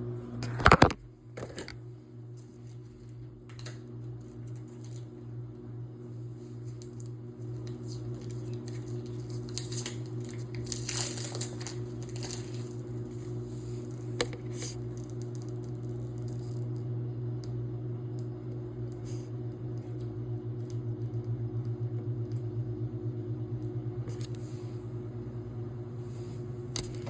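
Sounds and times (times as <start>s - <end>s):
low electrical hum: 0.0s - 27.0s
rustling and crinkling handling: 6.4s - 15.2s.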